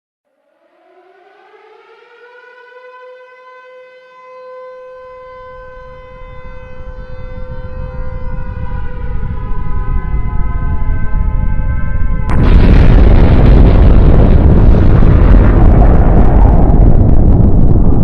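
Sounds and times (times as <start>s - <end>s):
siren wailing: 0.3s - 18.0s
deep rumble: 5.9s - 18.0s.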